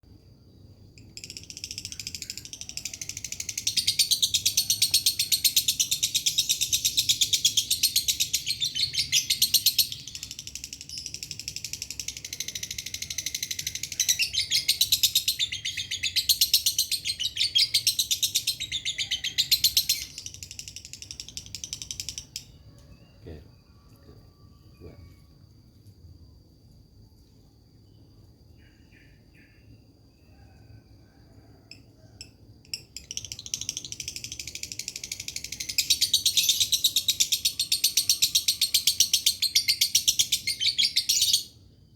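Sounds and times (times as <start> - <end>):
lovebird chattering trill: 1.0 - 23.4, 31.7 - 41.6.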